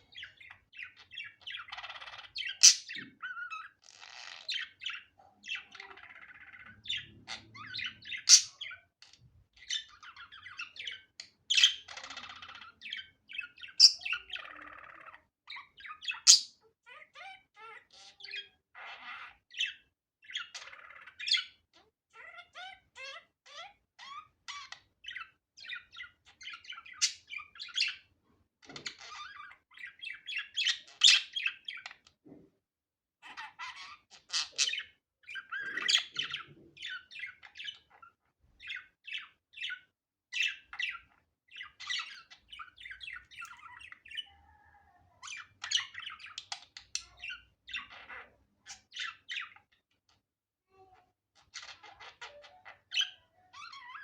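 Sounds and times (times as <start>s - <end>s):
budgerigar chattering: 2.4s - 3.1s.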